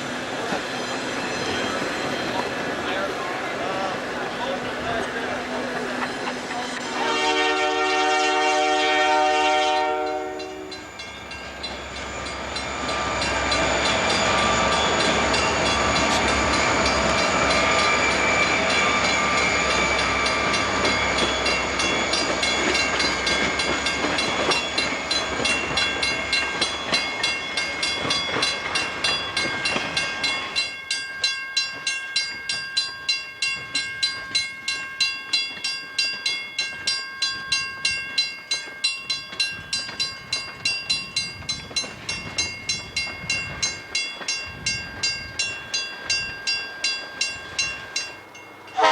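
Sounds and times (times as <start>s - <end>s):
train rolling rumble: 0.0s - 48.9s
train horn blast: 6.8s - 10.8s
wheels clattering over rail joints: 10.4s - 48.8s.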